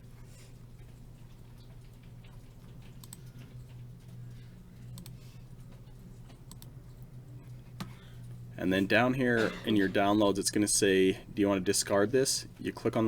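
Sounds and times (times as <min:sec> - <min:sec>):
low electrical hum: 0:00.0 - 0:13.0
computer mouse clicks: 0:01.8 - 0:03.8, 0:04.8 - 0:07.1.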